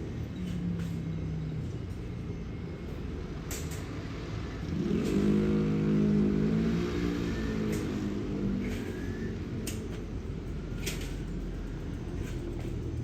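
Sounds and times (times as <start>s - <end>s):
electric train motors humming: 4.6s - 13.0s.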